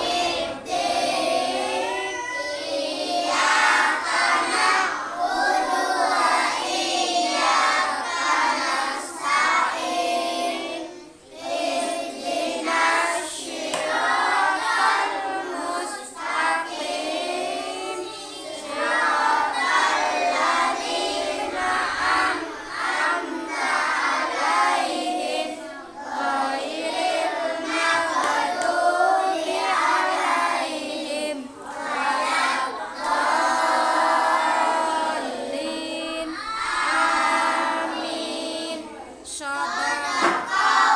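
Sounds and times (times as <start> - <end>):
children singing in unison: 0.0 - 40.9.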